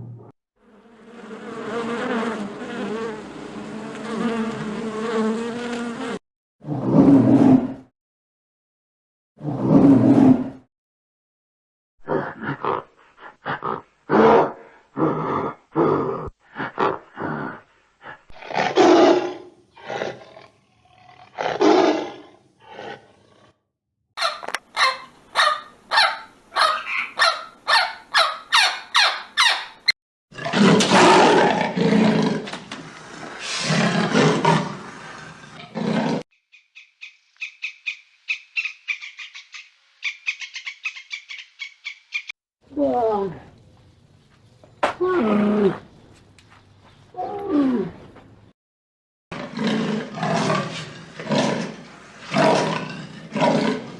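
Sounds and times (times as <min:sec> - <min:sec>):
fast rattling pulses: 0:24.2 - 0:29.9
loud animal calls: 0:24.2 - 0:29.9
rapid high-pitched chirping: 0:24.2 - 0:29.9
rough dense animal call: 0:24.2 - 0:29.9.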